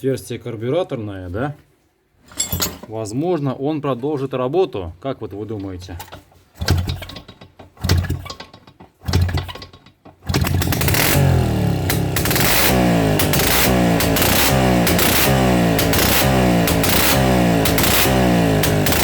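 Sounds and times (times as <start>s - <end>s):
two-stroke engine starting and running: 6.0s - 19.0s.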